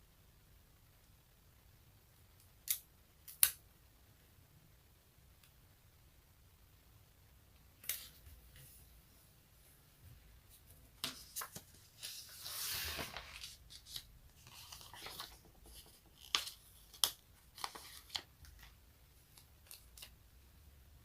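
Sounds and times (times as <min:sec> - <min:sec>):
sharp snaps: 0:02.4 - 0:03.6.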